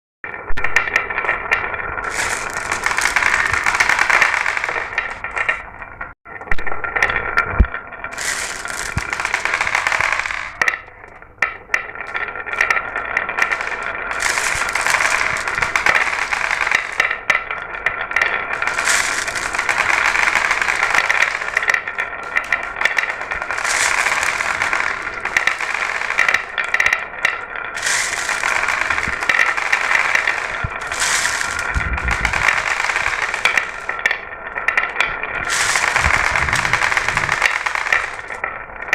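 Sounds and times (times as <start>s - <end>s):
marbles rattling down track: 0.3s - 6.2s, 6.8s - 38.9s.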